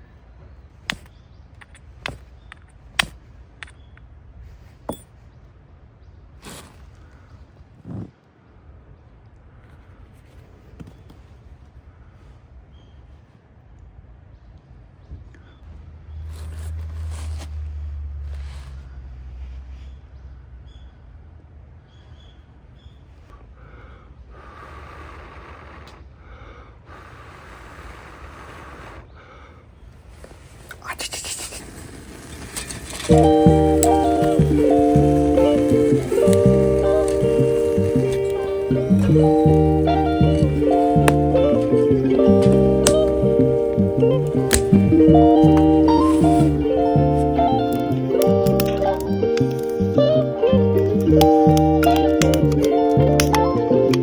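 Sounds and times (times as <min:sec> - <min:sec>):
motorcycle engine droning: 0:31.7 - 0:54.0.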